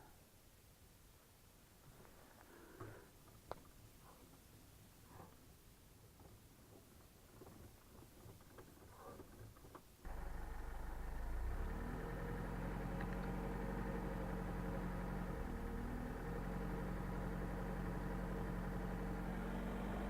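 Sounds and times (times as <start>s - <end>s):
car engine revving hard: 10.1s - 20.0s.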